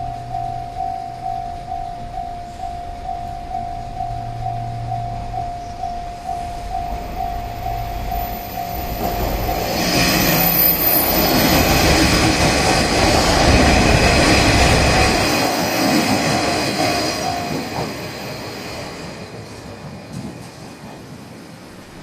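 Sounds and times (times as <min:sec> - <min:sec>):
level-crossing bell ringing: 0:00.0 - 0:19.3
train running on rails: 0:00.0 - 0:22.0.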